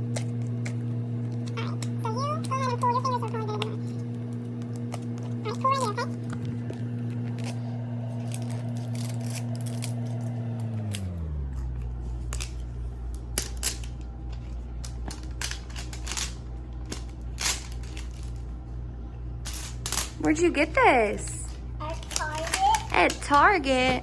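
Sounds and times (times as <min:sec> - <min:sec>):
steady low hum: 0:00.0 - 0:24.0
scissors snipping packaging: 0:21.9 - 0:23.4.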